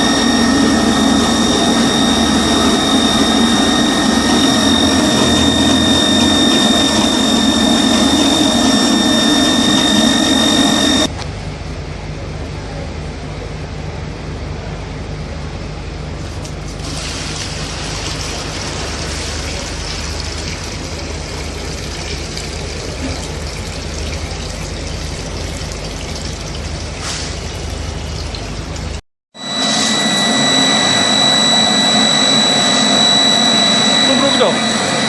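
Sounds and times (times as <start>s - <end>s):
wet dry vacuum cleaner running: 0.0s - 11.1s, 16.8s - 24.5s, 29.3s - 35.0s.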